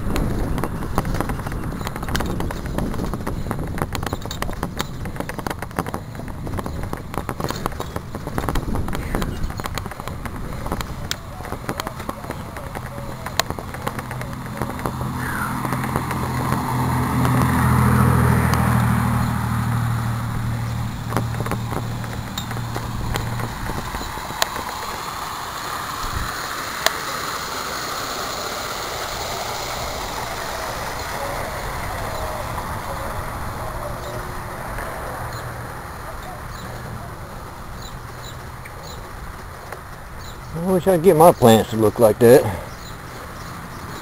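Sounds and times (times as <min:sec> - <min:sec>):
bicycle riding hiss and rattle: 0:00.0 - 0:44.0
vehicle engine passing: 0:05.2 - 0:44.0.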